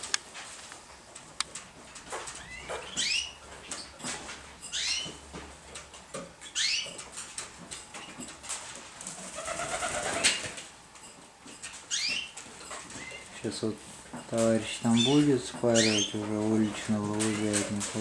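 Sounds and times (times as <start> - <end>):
pigeons calling: 1.8 - 5.4, 6.4 - 10.7, 11.8 - 18.0.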